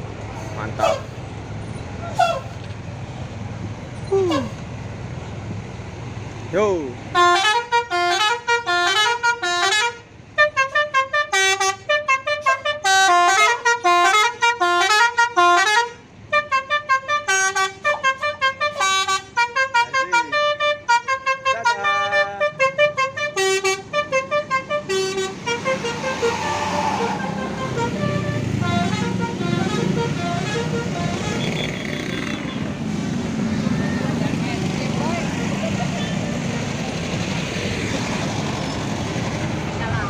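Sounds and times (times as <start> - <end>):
musical air horn melody: 7.2 - 31.7
rushing noise: 25.3 - 30.1.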